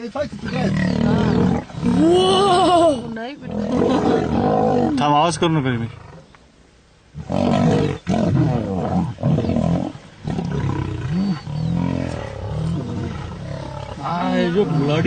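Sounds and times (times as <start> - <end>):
lions roaring: 0.5 - 2.3, 7.2 - 15.0.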